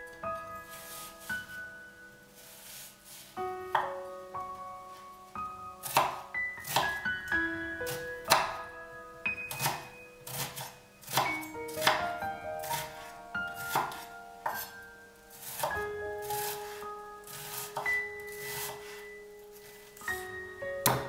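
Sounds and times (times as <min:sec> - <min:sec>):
background music with held notes: 0:00.0 - 0:21.0
knife chopping on cutting board: 0:05.8 - 0:07.0, 0:09.5 - 0:12.1.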